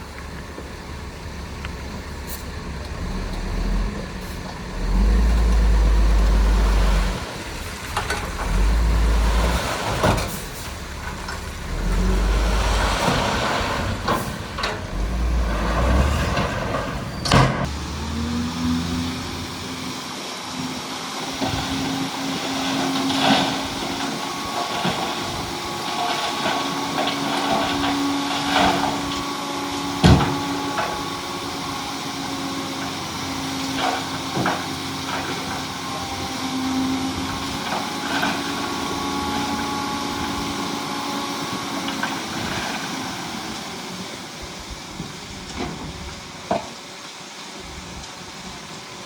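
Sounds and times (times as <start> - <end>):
diesel earthmoving machinery running: 0.0 - 49.0
sharp knocks and clanks: 30.0 - 31.1.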